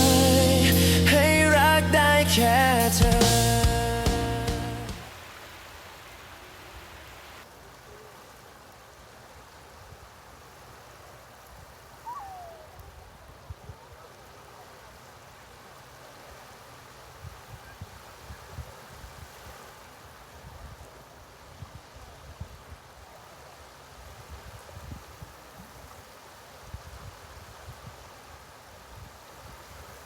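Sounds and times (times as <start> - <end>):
music: 0.0 - 5.0
rushing noise: 0.0 - 5.5.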